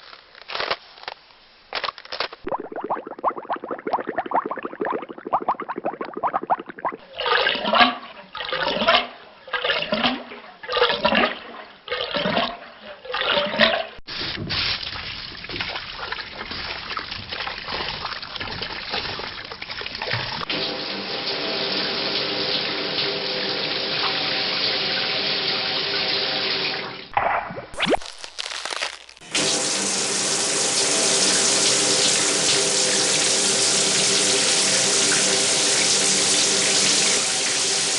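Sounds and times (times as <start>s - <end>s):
water gurgling: 2.5s - 14.0s, 27.1s - 37.9s.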